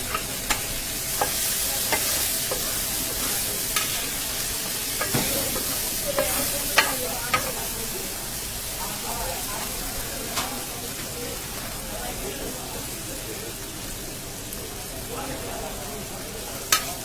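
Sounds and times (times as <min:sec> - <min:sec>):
metal utensil clinking on pan: 0:00.0 - 0:07.7, 0:16.7 - 0:17.0
food sizzling in hot oil: 0:00.0 - 0:17.0.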